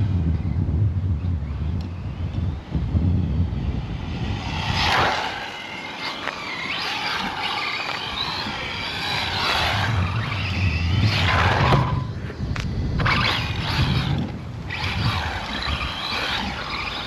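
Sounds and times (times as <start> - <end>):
low rumble: 0.0 - 6.0
electric motor whining: 1.4 - 17.0.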